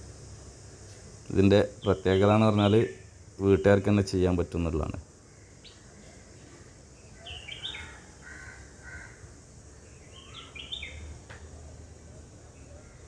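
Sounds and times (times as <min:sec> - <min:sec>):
birds chirping: 0:01.4 - 0:04.4, 0:05.1 - 0:13.0.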